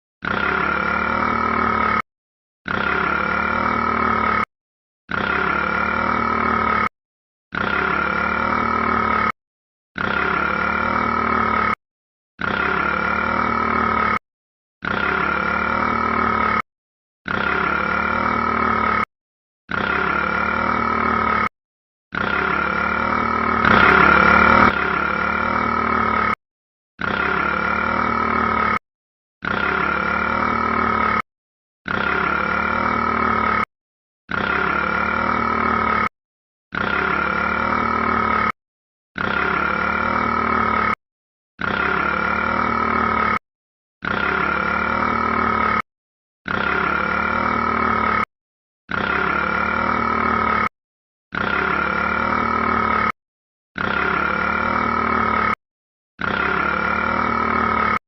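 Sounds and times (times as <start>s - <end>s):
rat burping: 7.5s - 9.4s, 10.0s - 11.8s, 12.4s - 14.2s, 22.1s - 26.4s, 27.0s - 28.8s, 36.7s - 38.6s, 39.2s - 41.0s, 41.6s - 43.4s, 44.0s - 45.8s, 51.3s - 53.1s, 53.8s - 55.6s, 56.2s - 57.5s.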